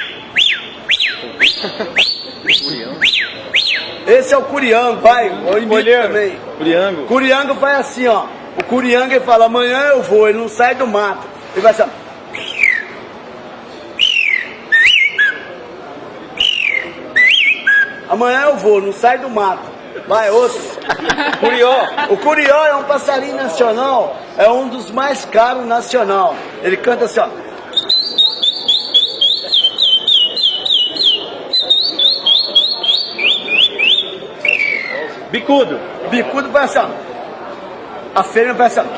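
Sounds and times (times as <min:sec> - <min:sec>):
man whistling bird call: 0:00.0 - 0:04.0, 0:12.3 - 0:13.0, 0:14.0 - 0:15.5, 0:16.4 - 0:18.1, 0:27.7 - 0:35.2.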